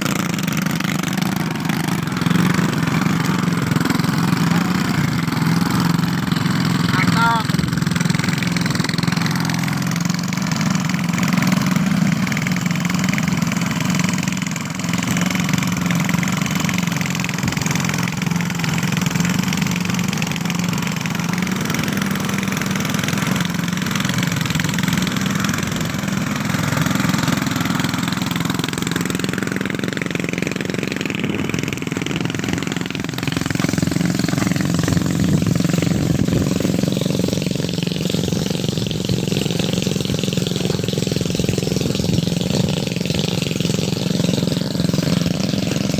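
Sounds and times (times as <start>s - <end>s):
large engine running: 0.0s - 45.9s.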